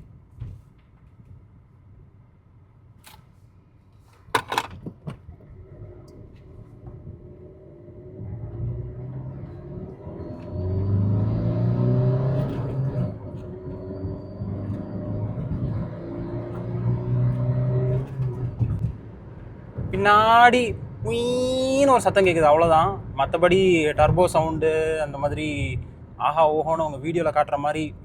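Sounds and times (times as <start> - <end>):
car engine accelerating hard: 5.6 - 19.0.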